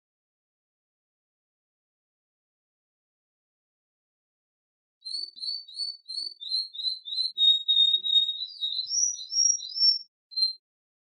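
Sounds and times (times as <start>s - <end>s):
canary singing: 5.0s - 10.6s.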